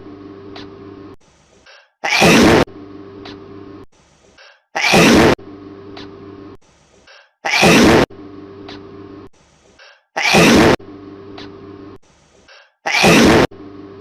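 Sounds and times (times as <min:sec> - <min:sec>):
steady low hum: 0:00.0 - 0:14.0
animal sneezing: 0:01.7 - 0:02.7, 0:04.4 - 0:05.4, 0:07.4 - 0:08.1, 0:10.2 - 0:10.8, 0:12.8 - 0:13.5.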